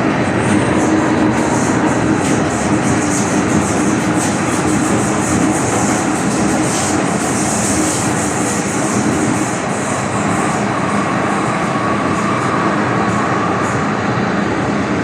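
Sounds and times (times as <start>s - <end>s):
steady high tone: 0.0s - 5.2s
train wheels rushing on rails: 0.0s - 15.0s.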